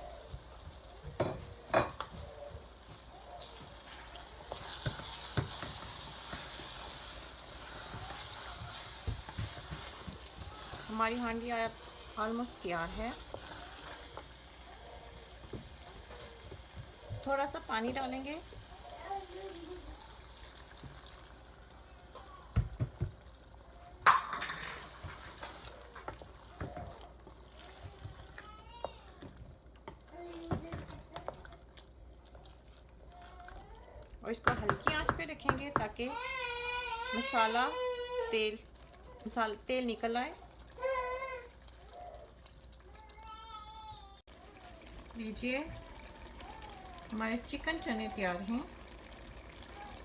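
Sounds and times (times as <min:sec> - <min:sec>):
curry sizzling in a pot: 0:00.0 - 0:50.0
spoon knocking against pot: 0:34.4 - 0:36.0.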